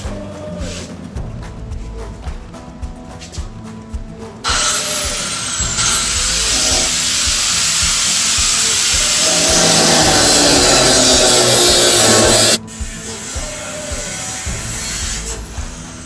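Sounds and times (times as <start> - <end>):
background music: 0.0 - 16.0
power tool cutting sheet metal: 4.5 - 16.0.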